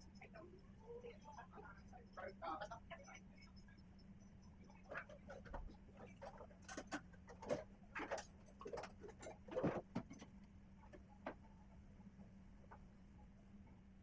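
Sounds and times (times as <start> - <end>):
faint steady hum: 0.0 - 14.0
small tools clicking and tapping: 4.9 - 10.3.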